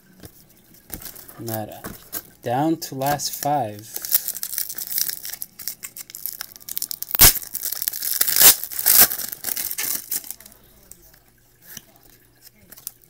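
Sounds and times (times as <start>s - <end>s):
wrapper torn open and crinkled: 3.0s - 10.6s.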